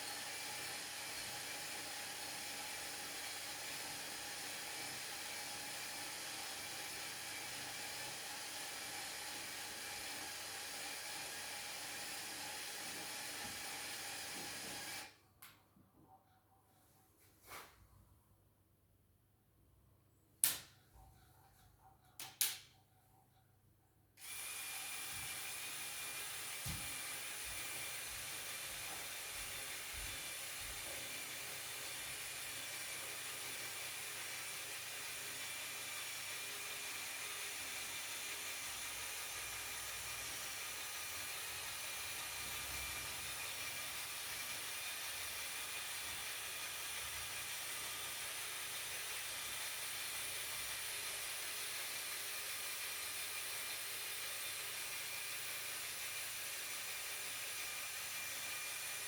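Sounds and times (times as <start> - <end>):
small motor whirring: 0.0 - 15.2, 24.2 - 59.0.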